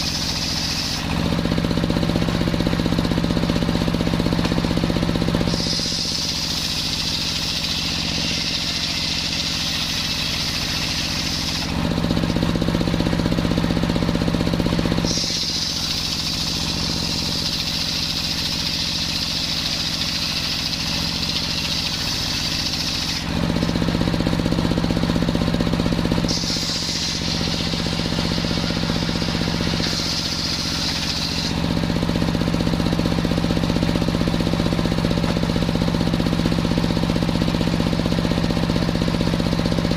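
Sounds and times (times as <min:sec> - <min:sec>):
engine drone: 0:00.0 - 0:39.9
saw blade whine cutting wood: 0:00.0 - 0:39.9.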